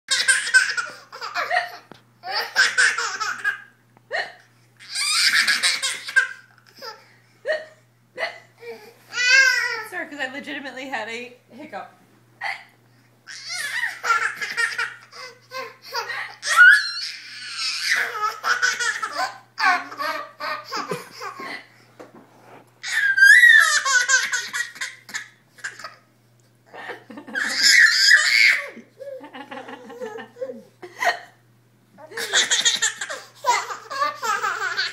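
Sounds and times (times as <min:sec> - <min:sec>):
child laughing: 0:00.1 - 0:04.2, 0:04.8 - 0:07.0, 0:13.3 - 0:21.7, 0:22.8 - 0:26.0, 0:26.7 - 0:31.2, 0:32.0 - 0:34.9.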